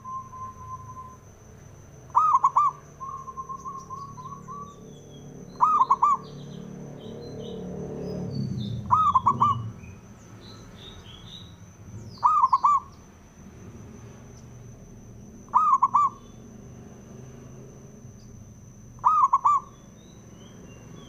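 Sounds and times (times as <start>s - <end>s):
small birds chirping: 0.0s - 13.3s, 13.9s - 21.0s
dove cooing: 2.1s - 4.9s, 5.5s - 6.6s, 8.7s - 9.8s, 12.1s - 12.9s, 15.5s - 16.4s, 19.0s - 19.8s.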